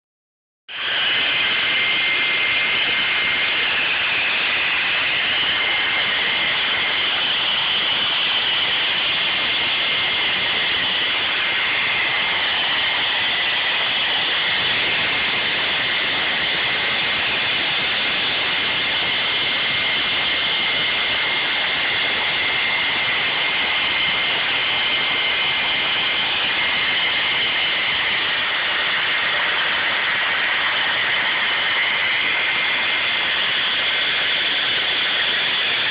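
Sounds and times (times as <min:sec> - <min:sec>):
fan motor whine: 0:00.7 - 0:35.9
hair dryer blowing: 0:00.7 - 0:35.9.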